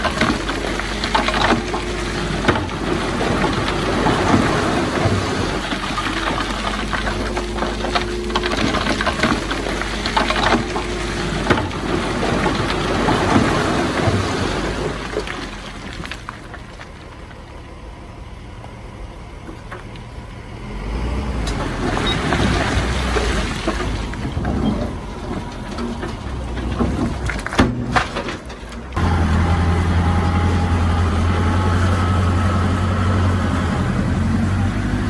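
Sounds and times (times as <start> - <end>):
heavy diesel machinery running: 0.0 - 35.0
metal knocks and clanks: 21.6 - 29.4.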